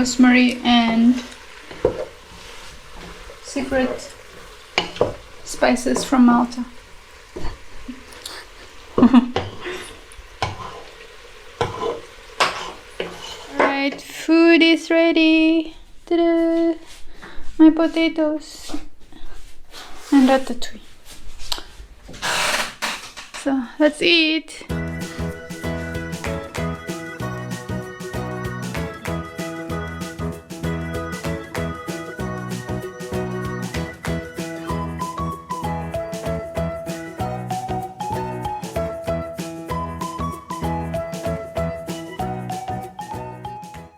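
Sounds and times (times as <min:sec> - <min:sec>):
upbeat instrumental music: 0:24.7 - 0:43.9.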